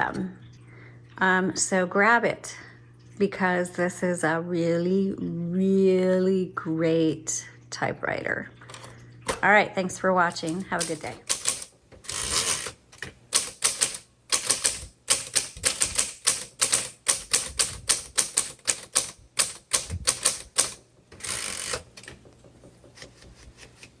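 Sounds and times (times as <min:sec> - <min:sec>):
typewriter carriage sliding rasp: 0:10.3 - 0:24.0
typewriter key strikes: 0:10.4 - 0:23.1.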